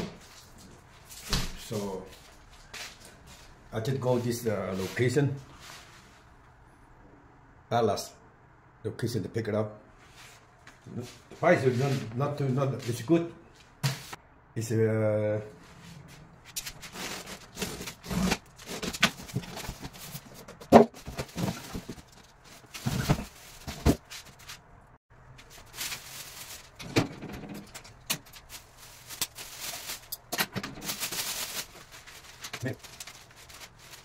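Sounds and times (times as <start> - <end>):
objects being handled: 16.0 - 34.0.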